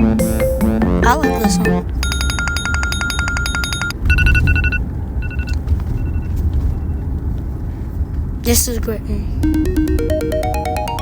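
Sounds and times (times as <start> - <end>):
phone ringtone buzzing trill: 0.0 - 5.5, 9.4 - 11.0
short two-tone beeps: 1.3 - 6.3.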